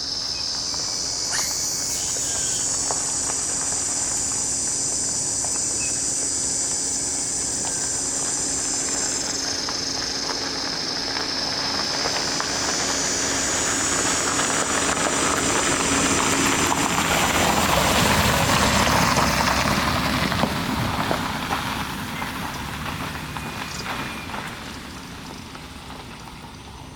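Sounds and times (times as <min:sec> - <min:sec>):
insect chorus buzzing: 0:00.0 - 0:20.2.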